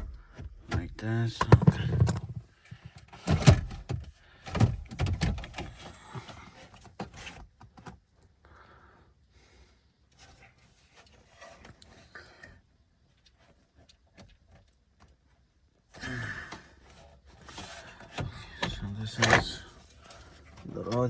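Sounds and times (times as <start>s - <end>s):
plastic dashboard trim clunks and clicks: 0.0s - 7.1s, 18.1s - 19.8s.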